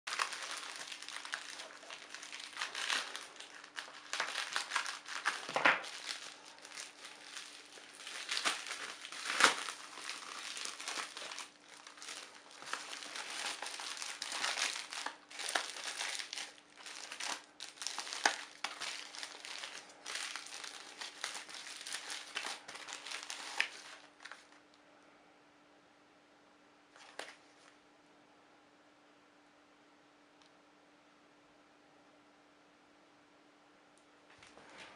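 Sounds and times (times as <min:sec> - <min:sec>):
packaging crinkling: 0:00.1 - 0:24.6.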